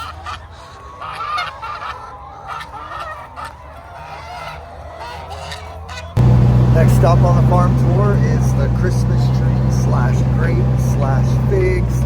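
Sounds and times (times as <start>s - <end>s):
geese honking: 0.0s - 12.0s
low steady hum: 6.2s - 12.0s.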